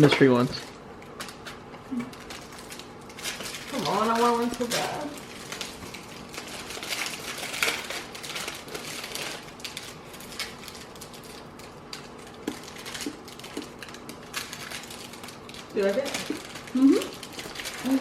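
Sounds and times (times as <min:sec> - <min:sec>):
wrappers crinkling and tearing: 0:00.5 - 0:18.0.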